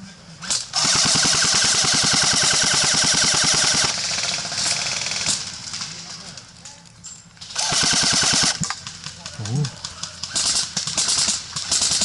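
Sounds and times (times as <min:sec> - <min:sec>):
airsoft rifle full-auto burst: 0:00.4 - 0:05.4, 0:07.5 - 0:08.6.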